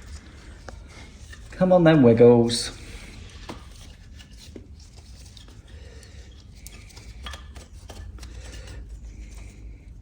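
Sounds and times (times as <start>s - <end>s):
clicks and rubbing of belt: 3.2s - 9.9s.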